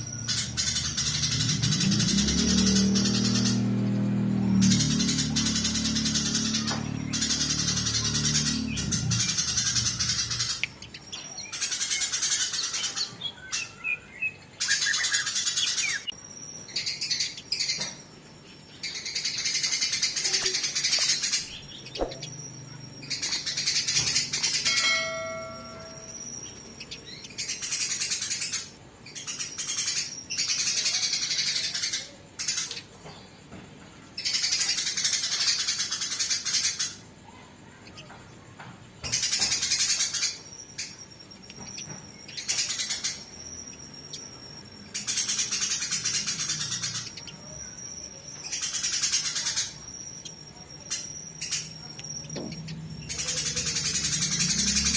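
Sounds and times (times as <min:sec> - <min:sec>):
sparrows chattering harshly: 0:00.0 - 0:54.9.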